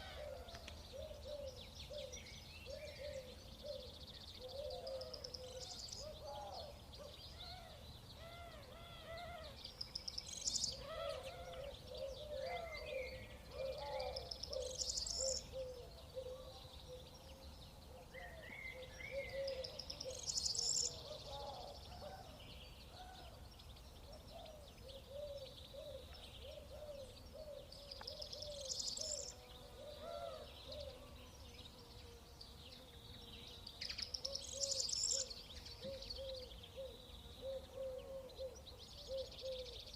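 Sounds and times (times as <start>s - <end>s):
bird song phrase: 0.0s - 39.9s
birds chattering: 23.7s - 32.2s.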